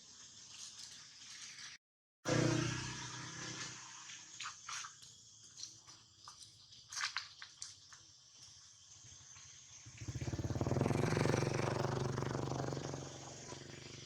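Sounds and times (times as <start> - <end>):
motorcycle engine passing by: 2.3 - 4.0, 9.8 - 14.0.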